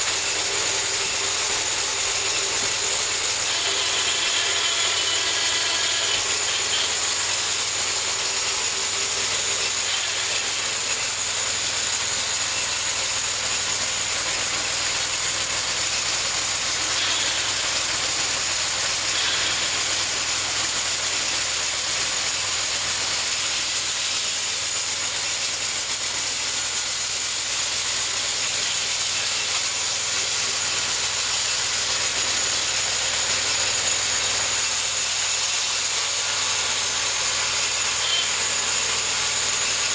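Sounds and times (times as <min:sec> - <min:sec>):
bandsaw cutting log: 0:00.0 - 0:39.9
high-pitched whine: 0:00.3 - 0:12.8, 0:16.5 - 0:21.8.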